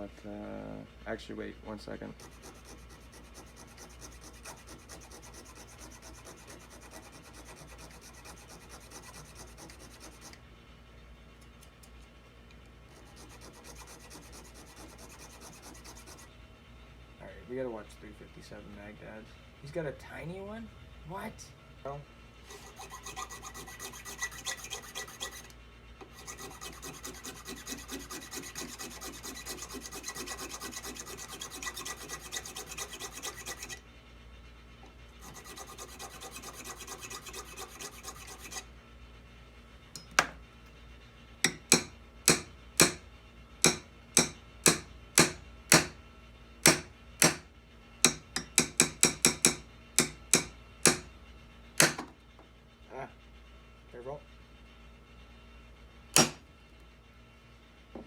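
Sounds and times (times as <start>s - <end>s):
file rasping: 2.0s - 10.4s, 12.9s - 16.3s, 22.4s - 33.8s, 35.2s - 38.7s, 41.4s - 43.0s, 43.6s - 46.0s, 46.6s - 47.4s, 48.0s - 51.1s.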